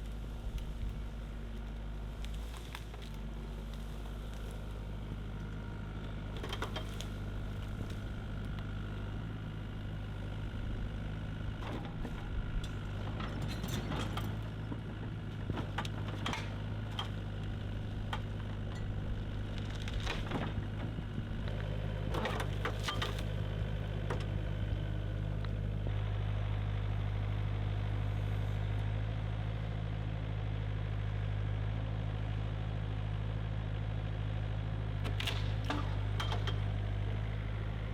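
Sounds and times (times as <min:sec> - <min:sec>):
diesel engine under load: 0:00.0 - 0:37.9
tree shear cracks and knocks: 0:00.4 - 0:09.0, 0:19.4 - 0:20.8, 0:21.5 - 0:23.6, 0:35.0 - 0:37.0.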